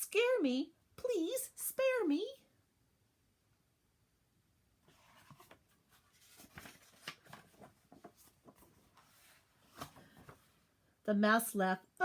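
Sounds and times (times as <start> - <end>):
book pages turning: 4.8 - 10.6
paper rustling: 4.8 - 10.7.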